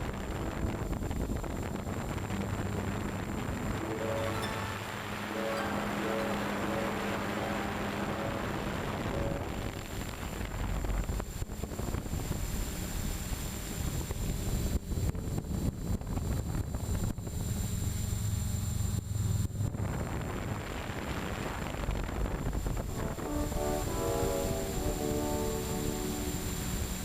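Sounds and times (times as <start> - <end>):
background music: 2.4 - 9.7, 22.9 - 27.0.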